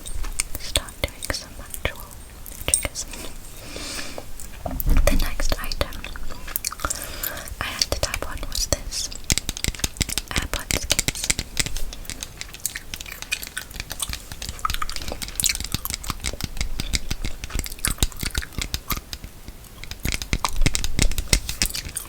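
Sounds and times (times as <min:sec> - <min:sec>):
small clicks and crackles: 0:04.4 - 0:22.0.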